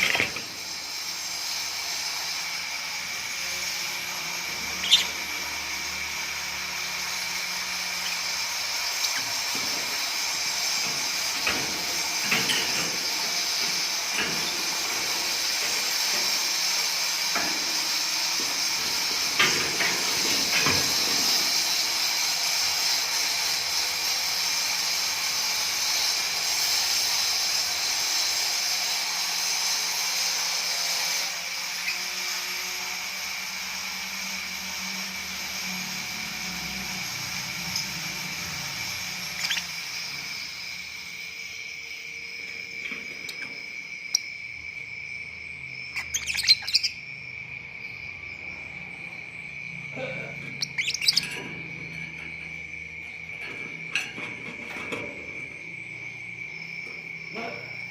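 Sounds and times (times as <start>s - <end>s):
high-pitched hiss: 0.0s - 57.9s
lovebird chirps: 4.8s - 5.5s, 39.4s - 39.8s, 45.9s - 47.0s, 50.6s - 51.2s.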